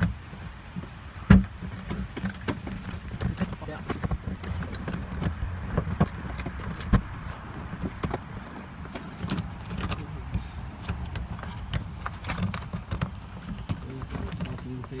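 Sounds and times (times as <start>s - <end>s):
low steady rumble: 0.0s - 14.3s
hand tools clicking on metal: 1.7s - 15.0s.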